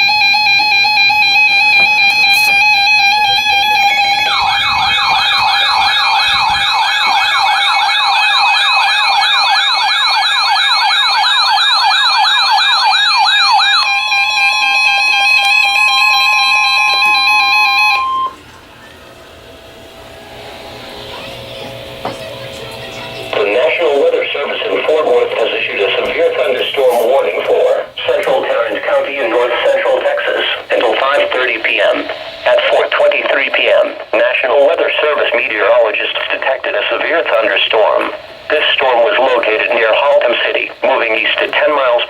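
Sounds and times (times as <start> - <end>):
steady electronic alert tone: 0.0 - 10.2
falling siren-like sweep: 0.0 - 18.4.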